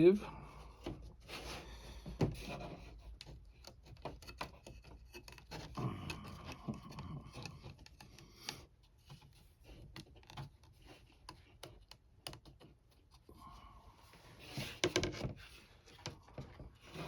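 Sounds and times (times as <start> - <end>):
hands clicking and scraping: 2.0 - 13.3.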